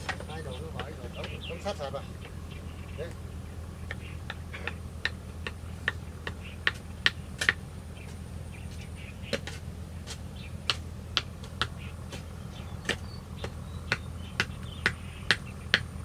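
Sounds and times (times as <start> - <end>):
steady low hum: 0.0 - 16.0
tool knocking bamboo: 3.9 - 15.9.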